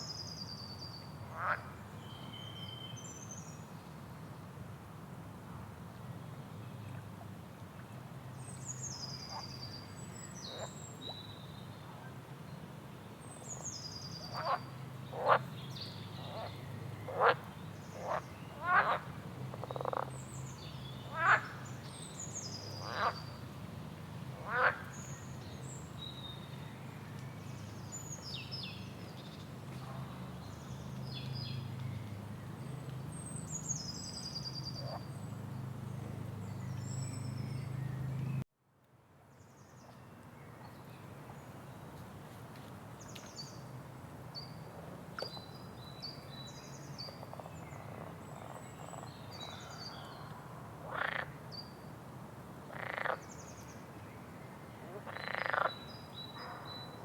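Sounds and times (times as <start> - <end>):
frogs croaking: 1.3 - 1.8, 14.3 - 15.5, 17.1 - 20.1, 21.0 - 21.7, 22.7 - 23.2, 24.4 - 24.9, 50.8 - 51.4, 52.7 - 53.2, 55.0 - 56.6.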